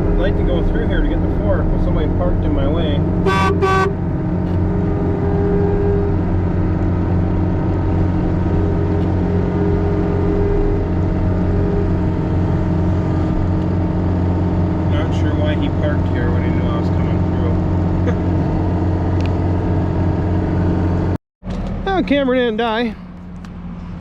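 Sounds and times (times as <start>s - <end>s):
farm vehicle engine running: 0.0s - 24.0s
vehicle horn blast: 3.2s - 4.0s, 4.8s - 6.3s.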